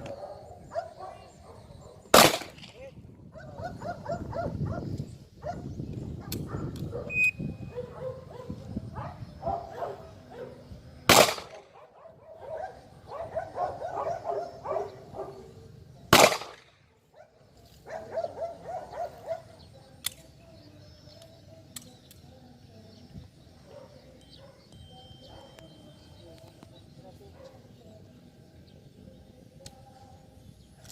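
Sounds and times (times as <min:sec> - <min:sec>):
handgun shots with echo: 0:02.1 - 0:02.8, 0:11.1 - 0:11.7, 0:16.1 - 0:16.7.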